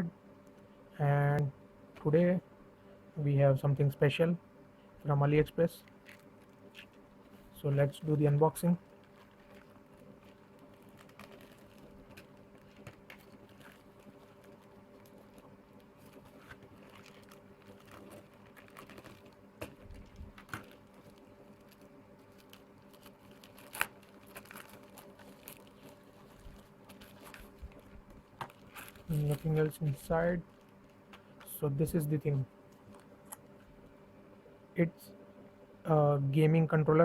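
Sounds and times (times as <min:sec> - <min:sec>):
faint steady hum: 0:00.0 - 0:37.0
packaging crinkling: 0:05.8 - 0:33.9
package being opened: 0:08.8 - 0:31.5.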